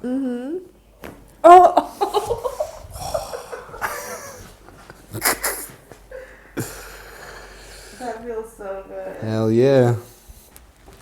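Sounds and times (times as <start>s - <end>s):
person laughing breathily: 1.7s - 7.7s.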